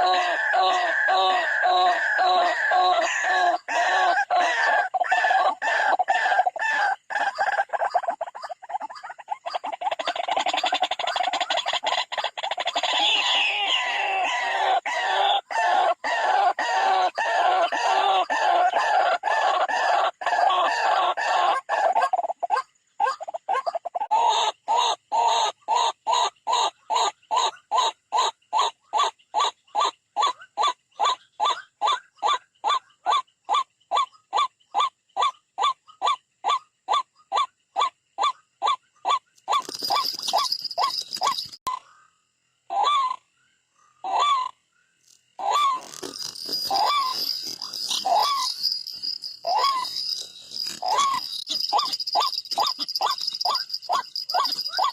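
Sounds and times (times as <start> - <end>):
waterhens croaking calls: 0.0 - 29.9, 38.2 - 41.6, 45.3 - 54.9.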